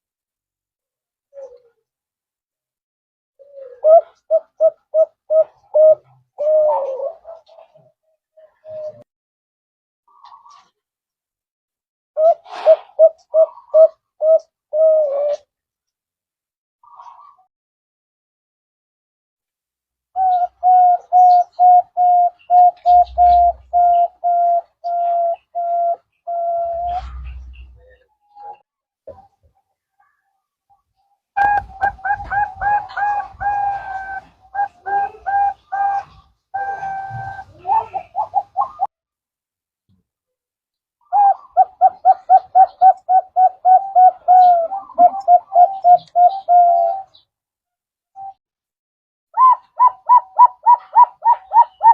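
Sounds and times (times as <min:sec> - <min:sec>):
dove cooing: 0:01.3 - 0:01.8, 0:03.4 - 0:09.0, 0:12.2 - 0:15.5, 0:20.2 - 0:29.3, 0:31.4 - 0:38.9, 0:41.0 - 0:47.2, 0:49.4 - 0:51.9.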